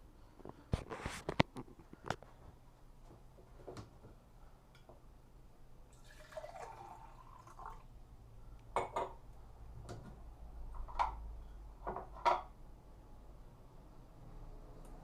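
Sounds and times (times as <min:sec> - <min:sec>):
water pouring and dripping: 0:06.0 - 0:07.9.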